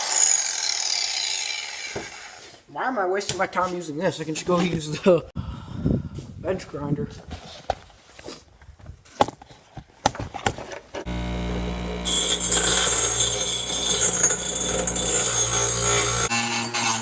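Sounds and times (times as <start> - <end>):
bench grinder motor hum: 11.1 - 17.0
metal grinding hiss: 12.0 - 17.0.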